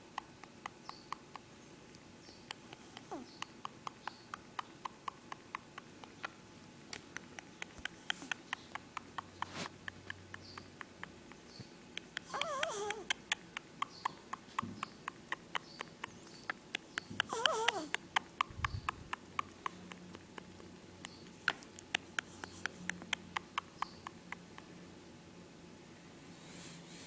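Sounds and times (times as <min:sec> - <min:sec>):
cat snoring with quick clicks: 0:12.0 - 0:16.2, 0:17.2 - 0:20.0.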